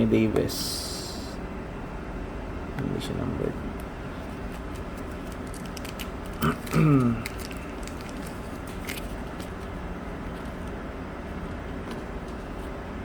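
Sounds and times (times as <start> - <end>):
steady background noise: 0.0 - 13.0
trading cards clicking and rustling: 4.4 - 9.7.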